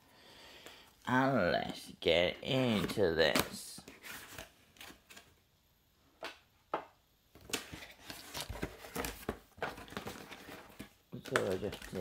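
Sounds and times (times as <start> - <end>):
cardboard box rustling: 7.7 - 12.0.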